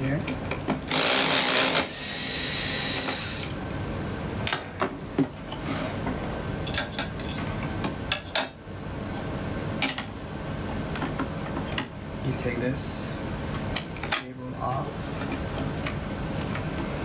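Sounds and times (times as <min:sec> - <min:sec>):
screwdriver whir: 0:00.8 - 0:03.6.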